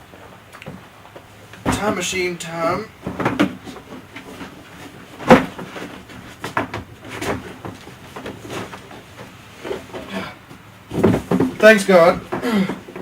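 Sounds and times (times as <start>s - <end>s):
hollow knocks on garbage can: 3.0s - 3.8s, 5.2s - 5.8s, 10.9s - 13.0s.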